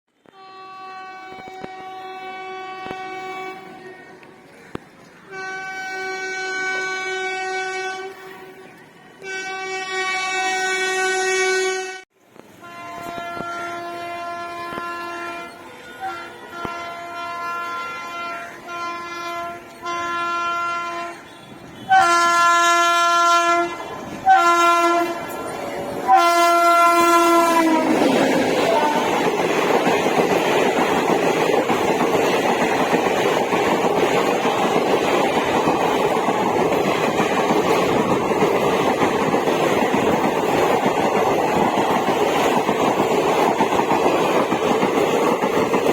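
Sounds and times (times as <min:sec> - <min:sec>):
locomotive horn blasts: 0:00.2 - 0:04.2, 0:05.3 - 0:29.3
rumble of passing train: 0:00.2 - 0:45.9.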